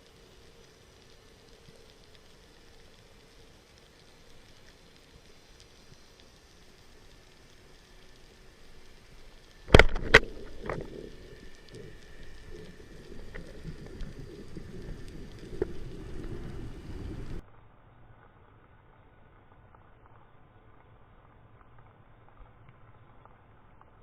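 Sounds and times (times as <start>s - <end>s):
crackling rumbling noise: 0.0s - 24.0s.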